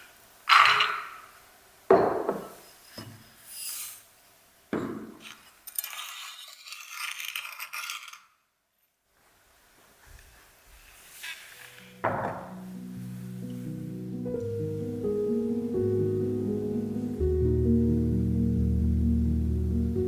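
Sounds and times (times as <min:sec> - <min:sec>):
utensils scraping: 0:05.3 - 0:08.4.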